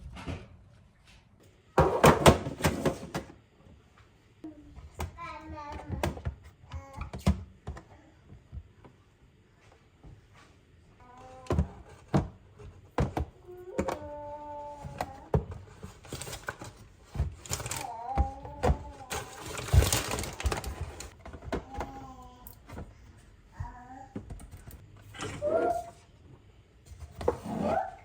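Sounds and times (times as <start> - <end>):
household objects clattering: 14.9 - 22.0.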